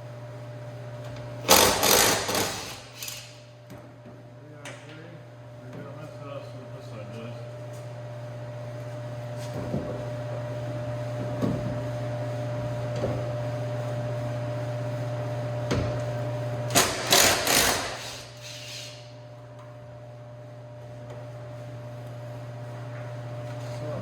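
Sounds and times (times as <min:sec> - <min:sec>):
shop hum: 0:00.0 - 0:24.0
air tool bursts: 0:01.5 - 0:03.4, 0:16.7 - 0:19.1.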